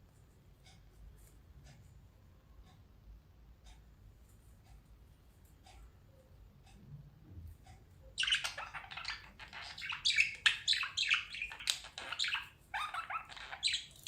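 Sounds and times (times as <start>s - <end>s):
budgies chattering: 8.2s - 14.0s.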